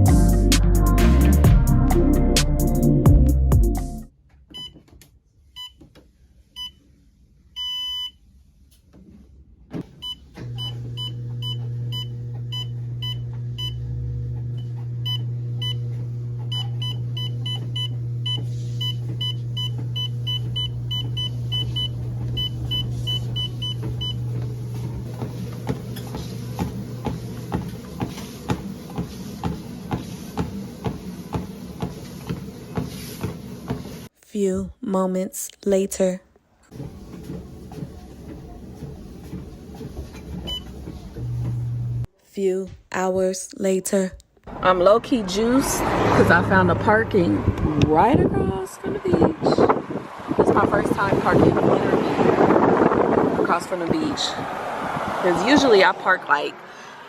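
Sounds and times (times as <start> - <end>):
low car hum: 44.5 - 56.6.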